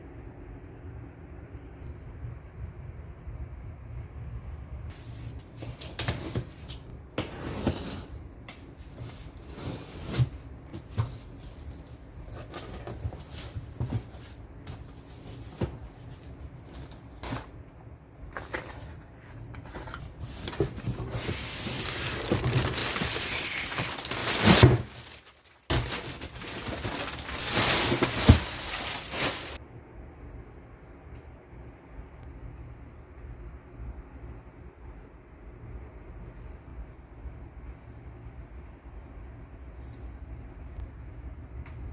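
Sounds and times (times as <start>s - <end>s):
packaging rustling: 10.2s - 17.6s, 18.3s - 29.6s.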